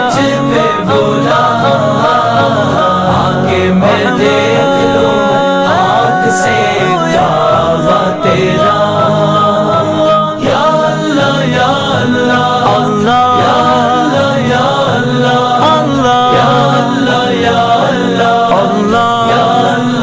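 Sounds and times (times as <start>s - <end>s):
choir-like voices singing a cappella: 0.0s - 20.0s.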